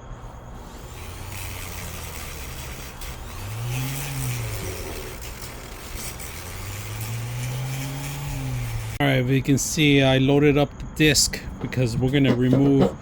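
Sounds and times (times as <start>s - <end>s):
rotary grinder motor running: 0.5s - 9.0s.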